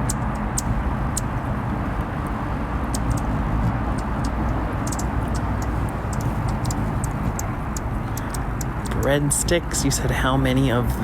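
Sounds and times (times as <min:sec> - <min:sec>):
steady low rumble: 0:00.0 - 0:11.0
hummingbird chip calls: 0:03.9 - 0:09.0.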